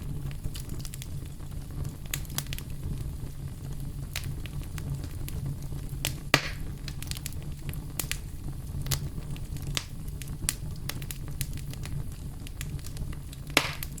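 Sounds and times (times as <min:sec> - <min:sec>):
wood fire crackling: 0:00.0 - 0:14.0
loud snaps with hiss: 0:06.0 - 0:07.4, 0:12.6 - 0:14.0.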